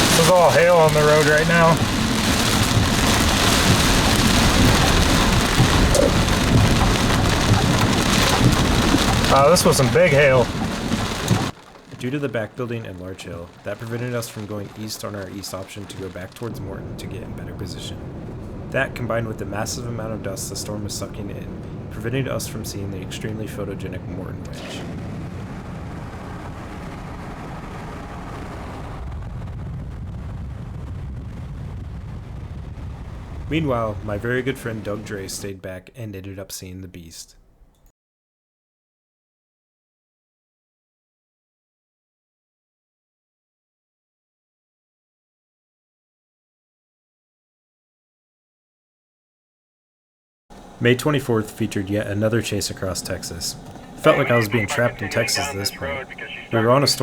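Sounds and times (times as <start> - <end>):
hailstones falling: 0.0 - 22.9, 50.6 - 57.0
wind buffeting microphone: 0.0 - 35.0.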